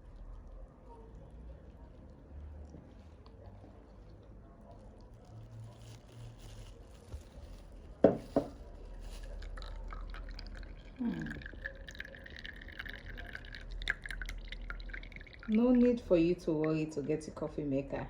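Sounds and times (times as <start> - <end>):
coffee pouring through sifter: 5.6 - 16.2.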